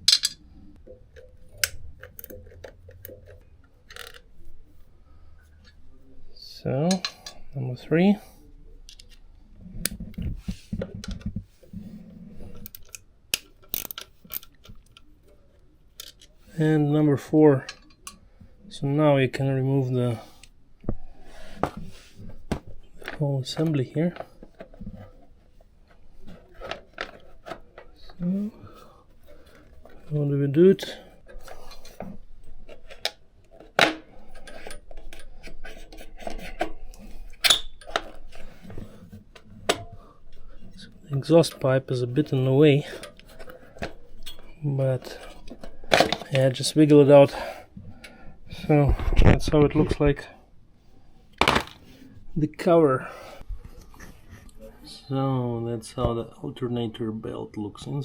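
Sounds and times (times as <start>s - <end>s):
dull rubbing and handling: 9.6s - 12.6s, 20.0s - 48.0s.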